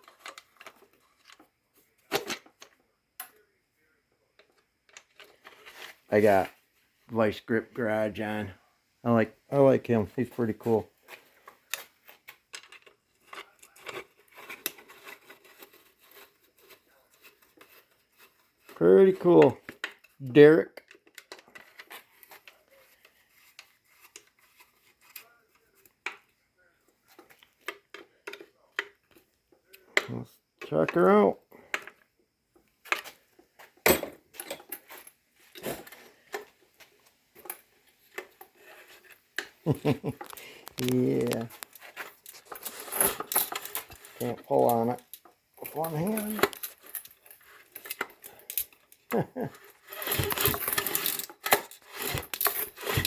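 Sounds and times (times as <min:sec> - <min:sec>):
tools clicking and tapping metal: 0:27.1 - 0:31.0
recoil starter rope pulls: 0:38.6 - 0:53.0.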